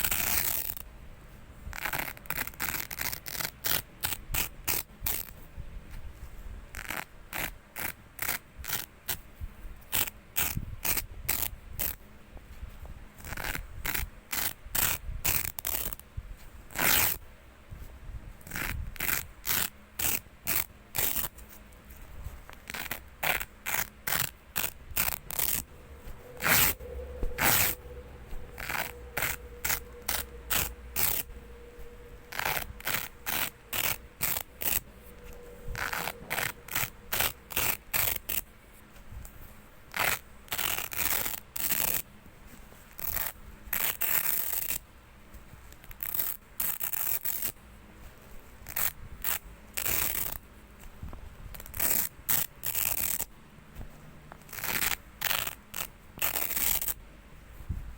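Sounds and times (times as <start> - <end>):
velcro tape ripping: 0.0 - 0.8, 1.8 - 5.3, 6.8 - 9.2, 13.2 - 16.0, 16.7 - 17.2, 18.4 - 21.3, 22.5 - 25.7, 26.3 - 26.8, 27.4 - 27.8, 28.6 - 31.3, 32.2 - 38.4, 39.9 - 42.0, 43.0 - 44.8, 45.9 - 47.6, 48.6 - 50.4, 51.6 - 53.3, 54.4 - 57.0.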